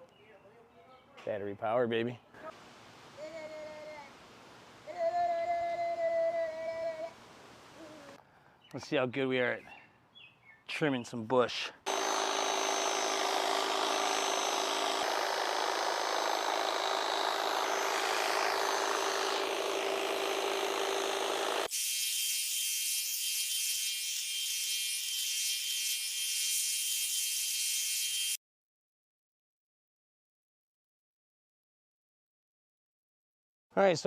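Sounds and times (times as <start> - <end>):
hedge trimmer cutting bush: 11.9 - 22.0.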